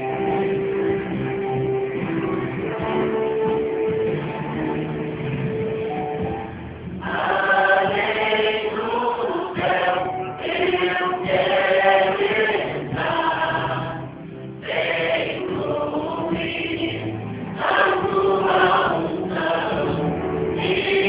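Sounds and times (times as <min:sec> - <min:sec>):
instrumental backing: 0:00.0 - 0:21.0
gospel choir singing: 0:07.0 - 0:21.0.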